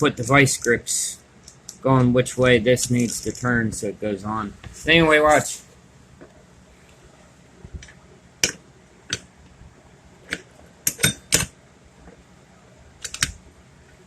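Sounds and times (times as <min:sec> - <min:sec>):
metal tools clinking on metal parts: 0:10.9 - 0:11.5.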